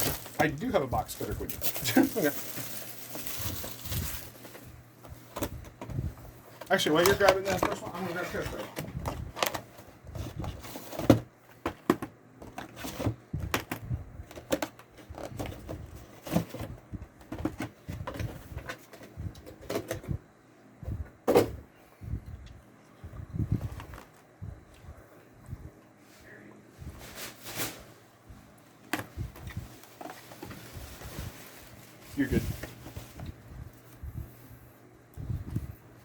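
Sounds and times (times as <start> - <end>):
cardboard boxes being handled: 0.0 - 4.7.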